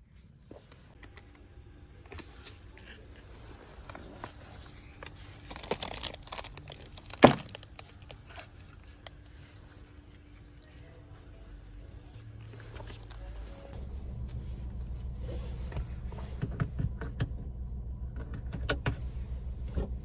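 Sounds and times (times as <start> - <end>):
crinkling: 2.1 - 10.9.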